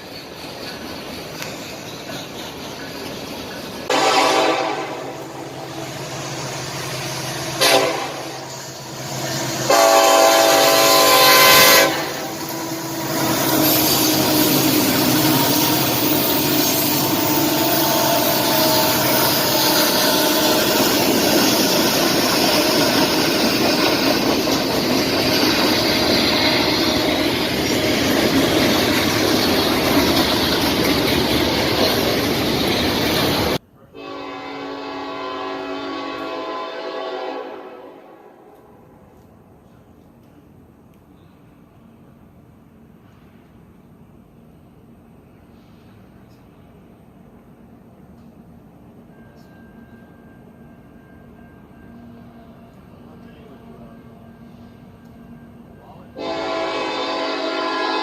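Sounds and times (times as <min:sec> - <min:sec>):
train wheels rumbling on rail: 0:00.0 - 0:58.0
locomotive air horn: 0:03.9 - 0:05.4, 0:07.5 - 0:08.5, 0:09.5 - 0:15.6, 0:17.1 - 0:21.7, 0:33.9 - 0:38.8, 0:56.2 - 0:58.0.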